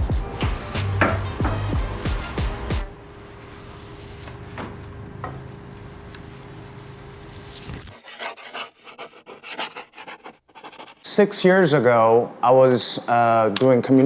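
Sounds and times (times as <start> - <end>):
scratching strokes on wood: 0.4 - 2.9, 7.3 - 11.1.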